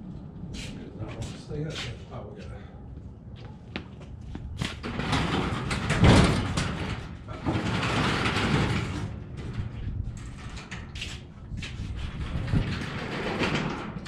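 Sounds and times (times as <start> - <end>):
garage door rattling along tracks: 4.6 - 14.0.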